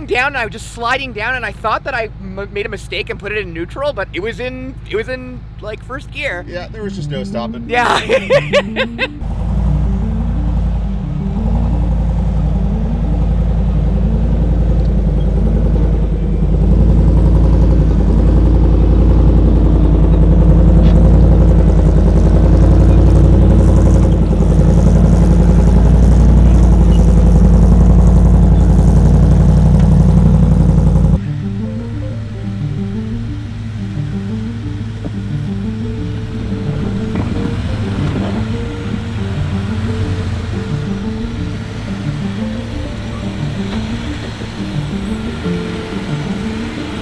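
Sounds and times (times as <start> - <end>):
vehicle engine running: 0.0 - 47.0.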